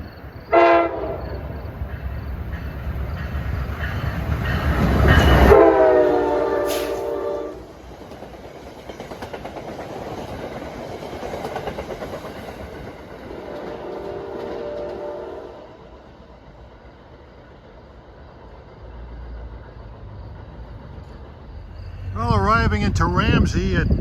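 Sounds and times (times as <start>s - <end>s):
train horn blast: 0.5s - 1.4s, 5.3s - 7.7s, 13.7s - 15.8s
train wheels clattering: 1.4s - 15.1s.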